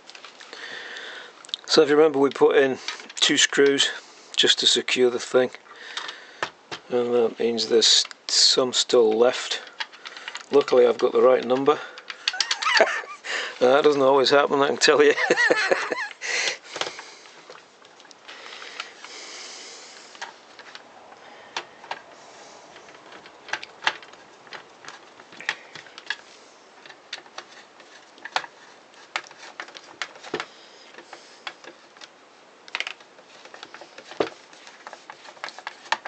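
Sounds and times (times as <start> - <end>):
screwdriver and screws clicking: 12.2 - 13.0.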